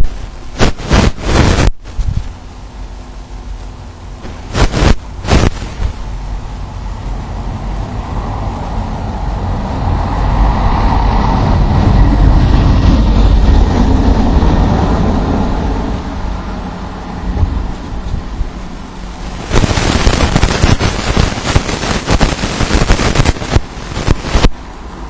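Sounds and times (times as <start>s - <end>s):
vehicle passing by: 6.7s - 18.1s.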